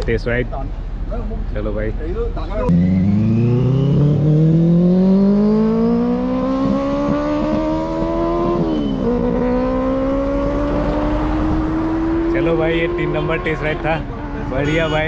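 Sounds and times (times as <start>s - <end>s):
motorcycle engine accelerating: 2.7s - 14.4s.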